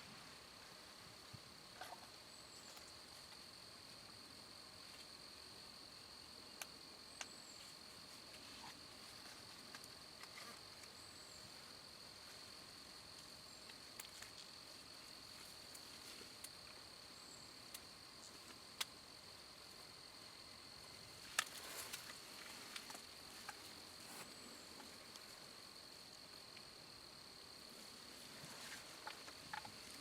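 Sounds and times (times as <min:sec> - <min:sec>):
small ticks and snaps: 0:06.6 - 0:07.4, 0:09.7 - 0:11.0, 0:13.2 - 0:14.6, 0:17.6 - 0:19.0, 0:21.2 - 0:23.8.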